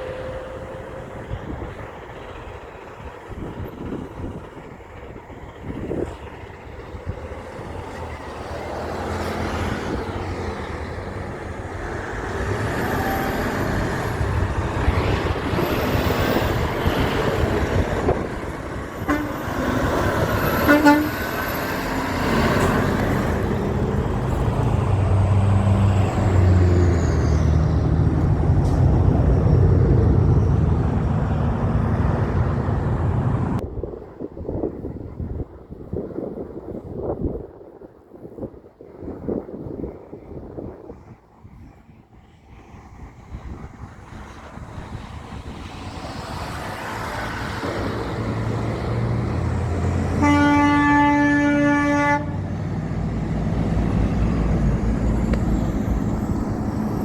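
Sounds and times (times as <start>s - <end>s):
heavy trucks driving past: 0.0s - 33.6s, 40.6s - 57.0s
truck horn blast: 19.0s - 21.9s, 50.0s - 52.6s.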